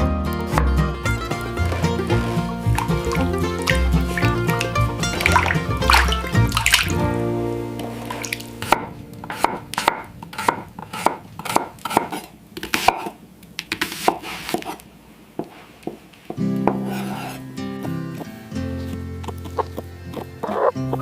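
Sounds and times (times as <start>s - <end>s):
knife chopping on cutting board: 8.6s - 14.8s, 16.6s - 18.3s.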